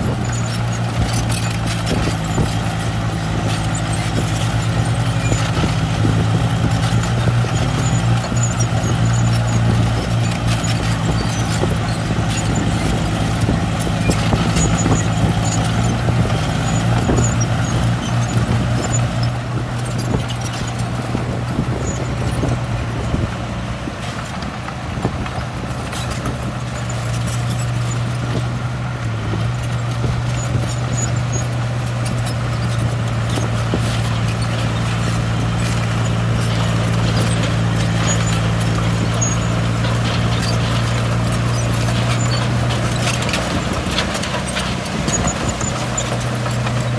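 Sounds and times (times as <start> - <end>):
diesel engine running: 0.0 - 46.9
metallic clanking and knocking: 29.2 - 46.9.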